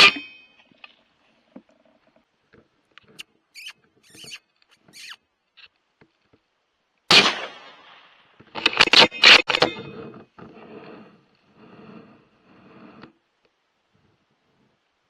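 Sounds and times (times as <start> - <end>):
faint high squeaks: 3.1 - 5.2
loud harsh cries: 3.6 - 5.2
rifle shot: 7.1 - 8.2.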